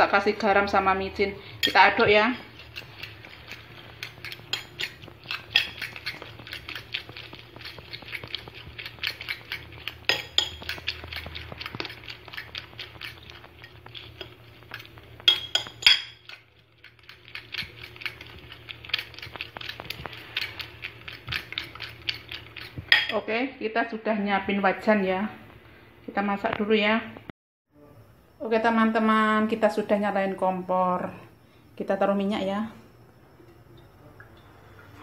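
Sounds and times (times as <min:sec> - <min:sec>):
utensil clinking against bowl: 0:09.0 - 0:12.4, 0:14.2 - 0:16.4.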